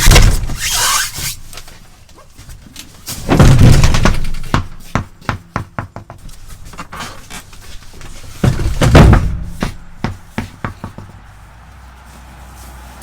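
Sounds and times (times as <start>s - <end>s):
tires knocking and clunking: 2.5s - 11.7s
heavy thud: 3.2s - 4.9s, 8.3s - 11.1s.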